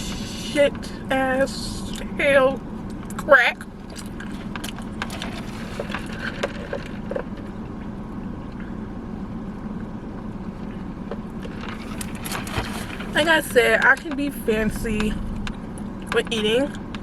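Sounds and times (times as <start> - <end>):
low hum in car cabin: 0.0 - 17.0
soft chewing: 11.7 - 13.4.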